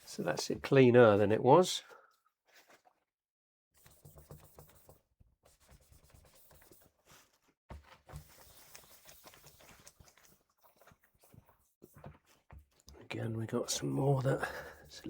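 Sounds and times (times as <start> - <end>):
small ticks and scrapes: 5.6 - 13.1.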